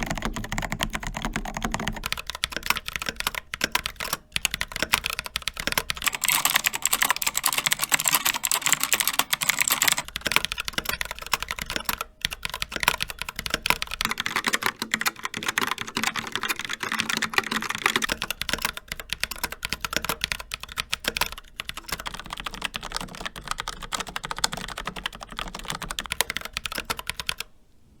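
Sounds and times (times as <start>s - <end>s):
typing on mechanical keyboards: 0.0s - 27.5s.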